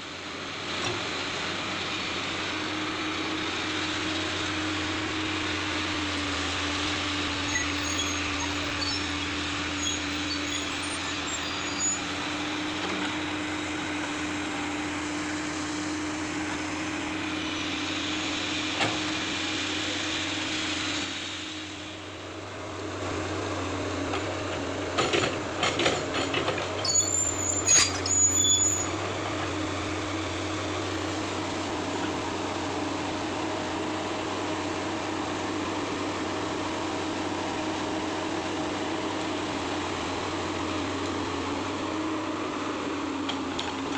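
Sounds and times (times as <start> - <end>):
excavator diesel engine running: 0.0 - 43.9
short high squeal: 7.4 - 12.2, 26.8 - 29.0.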